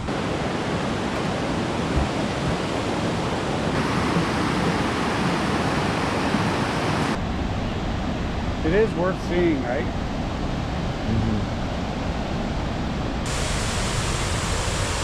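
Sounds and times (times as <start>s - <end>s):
waterfall rushing: 0.0s - 7.2s, 13.3s - 15.0s.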